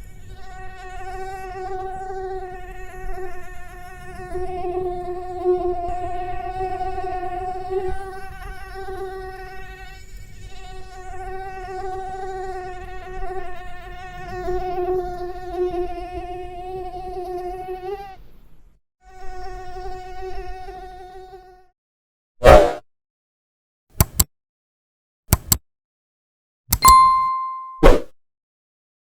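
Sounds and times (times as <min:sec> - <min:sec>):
mosquito wingbeat whine: 0:00.4 - 0:18.2.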